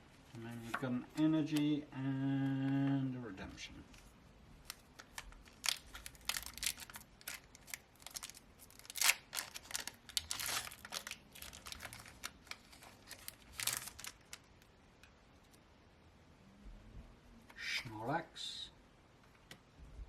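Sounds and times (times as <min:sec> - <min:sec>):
foil wrapper tearing and crinkling: 0:04.6 - 0:14.5.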